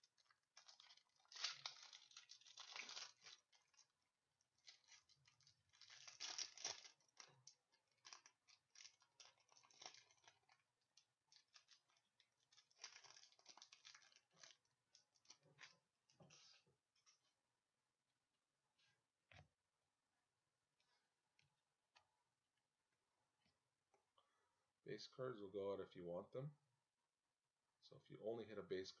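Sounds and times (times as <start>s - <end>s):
packaging tearing and crinkling: 0.1s - 3.9s, 4.6s - 15.7s.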